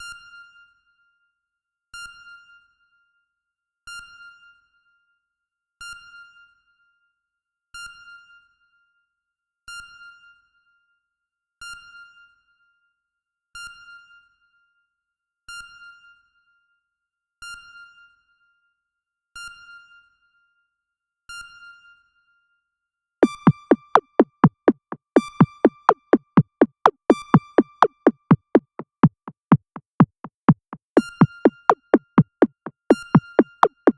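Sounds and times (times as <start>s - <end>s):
fast drum-machine beat: 23.2s - 33.9s.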